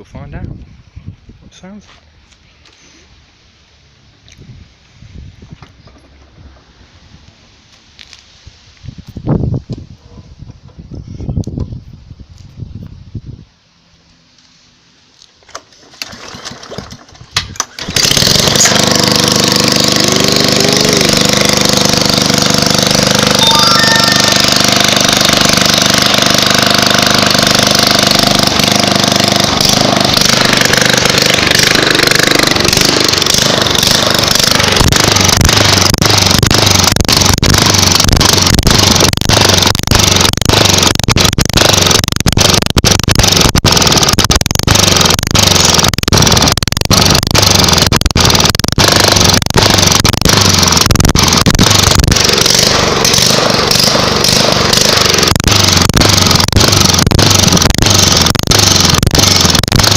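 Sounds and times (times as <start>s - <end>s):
lawnmower engine running: 14.0s - 59.9s.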